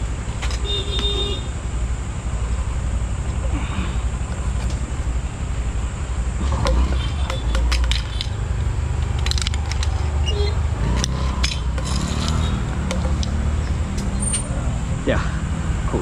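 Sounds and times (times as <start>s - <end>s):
low background rumble: 0.0s - 16.0s
sharp clicks and taps: 6.5s - 8.4s, 10.9s - 14.1s.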